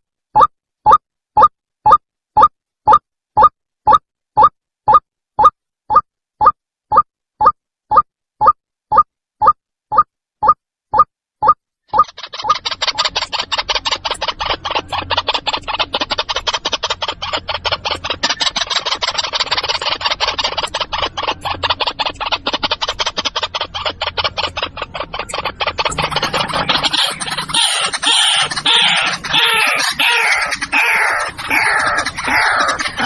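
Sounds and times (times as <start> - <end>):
waterhen calling: 24.8 - 33.0.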